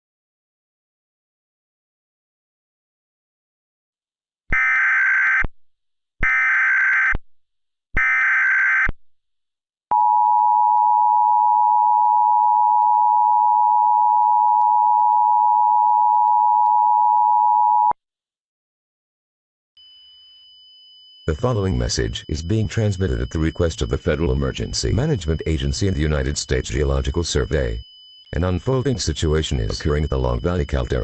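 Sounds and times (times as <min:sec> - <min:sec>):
two-tone attention signal: 0:19.8 - 0:31.0.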